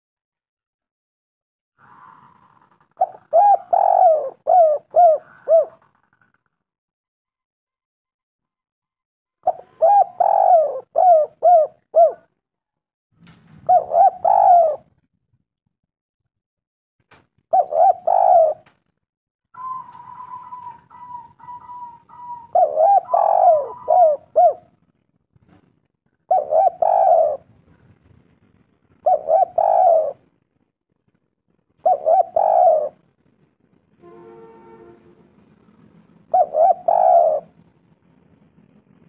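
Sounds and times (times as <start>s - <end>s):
dove cooing: 1.8s - 6.4s, 9.4s - 12.3s, 13.6s - 15.0s, 17.5s - 18.7s, 19.6s - 24.8s, 26.3s - 27.6s, 29.0s - 30.3s, 31.8s - 33.0s, 36.3s - 37.6s.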